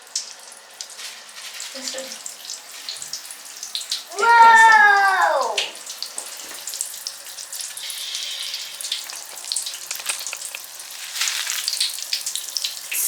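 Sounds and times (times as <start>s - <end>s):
popping candy crackling and fizzing: 8.9s - 13.0s.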